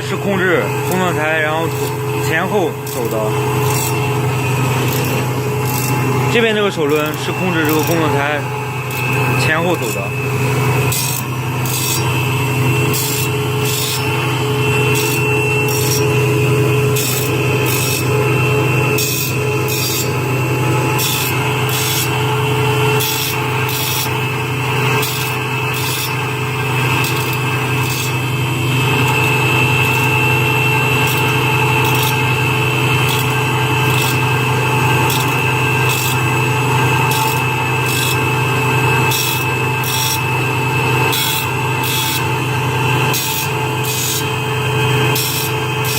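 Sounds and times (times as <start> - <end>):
grinding wheel scraping blade teeth: 0.0 - 45.9
machine motor hum: 0.0 - 45.9.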